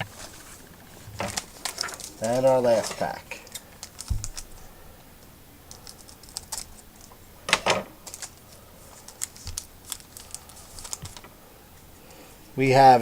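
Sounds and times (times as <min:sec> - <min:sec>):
card pack rustling and clicking: 0:00.0 - 0:04.7, 0:05.7 - 0:11.3.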